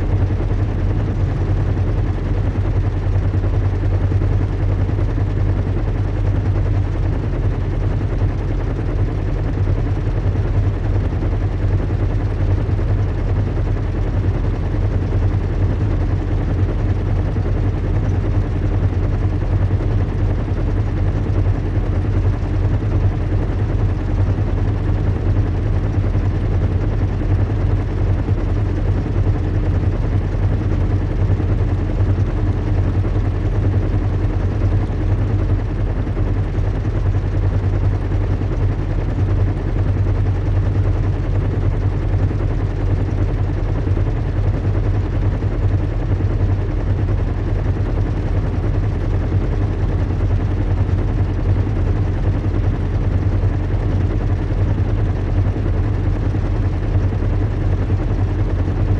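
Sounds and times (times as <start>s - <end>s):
low engine rumble and hum: 0.0s - 58.9s.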